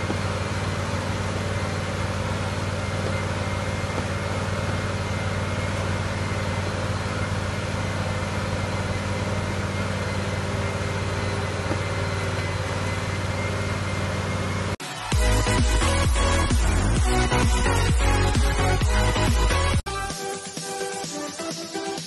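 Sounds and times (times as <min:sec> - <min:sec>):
machine humming and hissing: 0:00.0 - 0:18.2.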